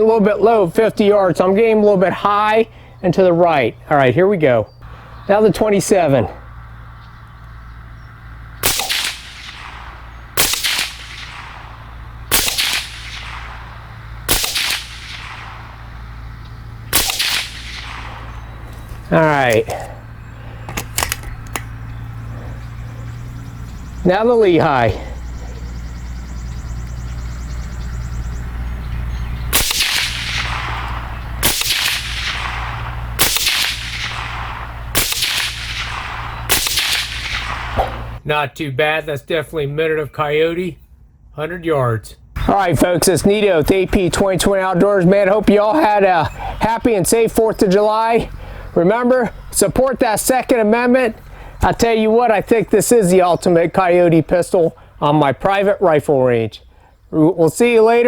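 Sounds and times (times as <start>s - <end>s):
pistol gunshots: 8.5s - 23.6s, 29.1s - 38.2s.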